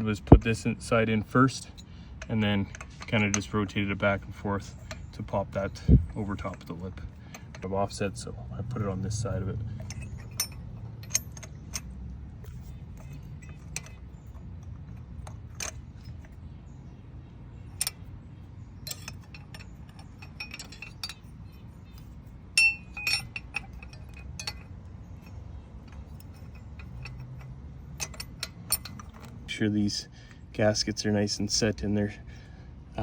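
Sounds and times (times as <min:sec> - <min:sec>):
steady low hum: 0:00.0 - 0:33.0
metallic clicks of tools and parts: 0:00.2 - 0:16.4, 0:17.6 - 0:18.1, 0:18.8 - 0:29.6
ringing metal clink: 0:08.7 - 0:16.4, 0:17.6 - 0:18.1, 0:18.8 - 0:29.4.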